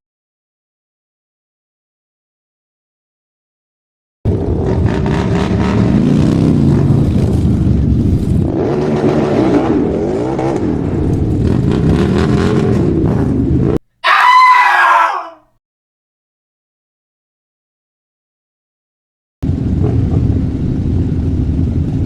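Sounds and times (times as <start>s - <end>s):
car engine revving: 4.3s - 13.8s
loud screech: 14.0s - 15.4s.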